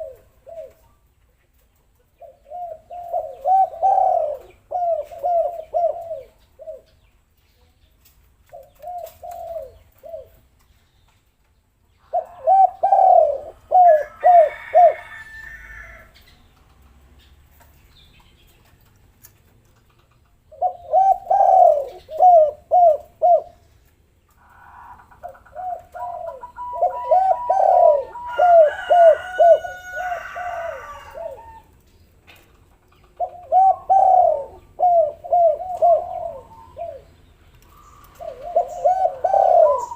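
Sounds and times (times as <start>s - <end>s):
doves cooing: 0.0s - 1.0s, 2.2s - 7.0s, 8.5s - 10.5s, 12.0s - 16.9s, 19.8s - 31.8s, 32.6s - 39.9s.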